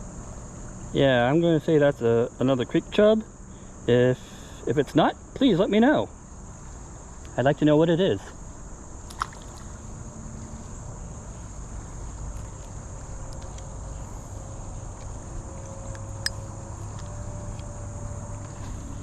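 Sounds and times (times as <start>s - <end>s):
high-pitched insect chorus: 0.0s - 19.0s.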